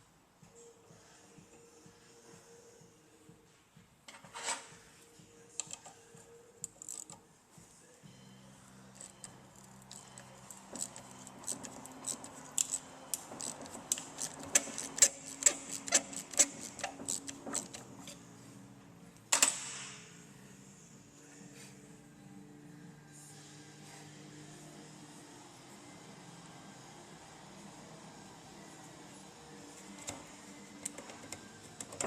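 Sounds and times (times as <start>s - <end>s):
metal scrape: 4.1s - 4.8s
hand tools clicking on metal: 9.9s - 18.2s.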